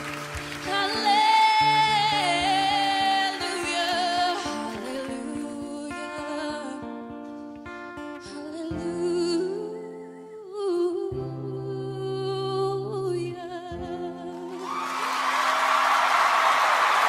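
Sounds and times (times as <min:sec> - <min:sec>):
audience applause and cheering: 0:00.0 - 0:01.8, 0:14.5 - 0:17.0
acoustic guitar chords: 0:00.0 - 0:14.6
woman singing with vibrato: 0:00.5 - 0:07.0, 0:08.2 - 0:14.8.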